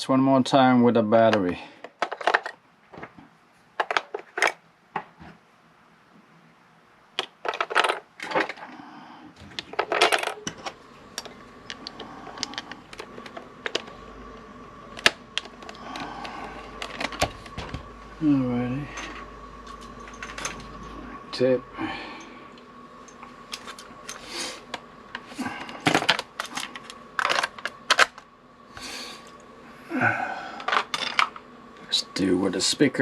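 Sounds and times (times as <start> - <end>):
faint hum with thin tone: 0.0 - 33.0
rattle: 9.5 - 14.0, 18.9 - 21.0, 25.8 - 28.2
metal parts clicking and clinking: 9.6 - 13.9, 19.0 - 21.0, 25.8 - 28.2.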